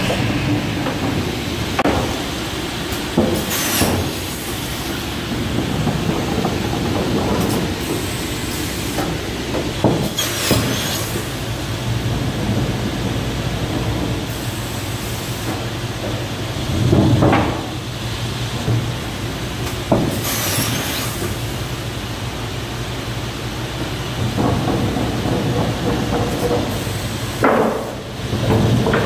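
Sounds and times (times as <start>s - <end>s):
knocks: 8.9s - 10.9s, 24.2s - 29.0s.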